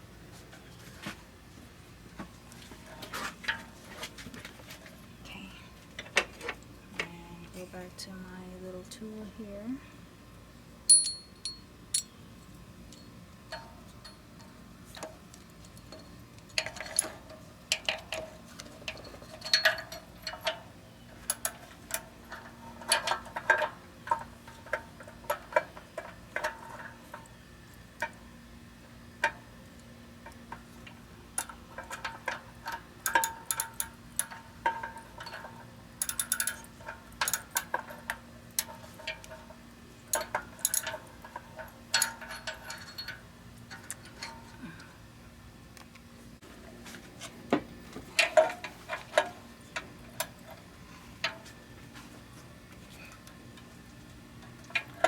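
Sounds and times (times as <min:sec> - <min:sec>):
metal tool clinks: 0:10.9 - 0:12.1.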